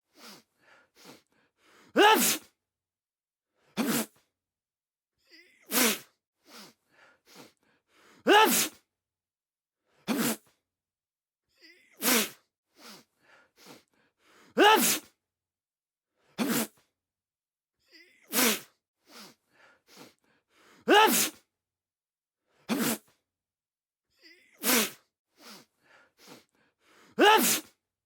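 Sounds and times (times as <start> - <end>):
breaths and sniffs: 0.0 - 2.6, 3.5 - 4.3, 5.2 - 8.8, 9.8 - 10.6, 11.6 - 15.2, 16.1 - 16.9, 17.8 - 21.5, 22.4 - 23.2, 24.2 - 27.8
man sneezing: 1.9 - 2.5, 3.8 - 4.2, 5.4 - 6.1, 8.2 - 8.8, 10.1 - 10.4, 11.7 - 12.4, 14.6 - 15.2, 16.4 - 16.8, 18.0 - 18.7, 20.9 - 21.4, 22.7 - 23.1, 24.3 - 25.0, 27.2 - 27.8.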